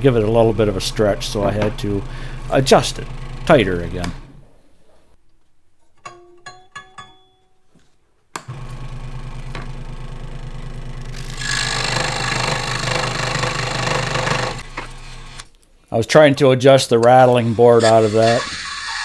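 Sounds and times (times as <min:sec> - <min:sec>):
saw cutting wood: 0:00.0 - 0:04.5, 0:08.5 - 0:15.5, 0:17.0 - 0:19.0
scroll saw buzzing: 0:00.0 - 0:04.6, 0:08.5 - 0:15.5, 0:17.0 - 0:19.0.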